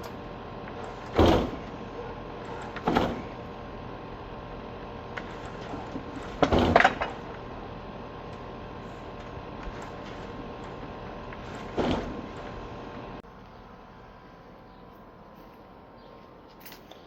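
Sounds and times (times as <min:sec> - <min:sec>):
mechanical hum: 0:00.0 - 0:17.0
short bangs: 0:00.7 - 0:03.6, 0:08.3 - 0:13.2.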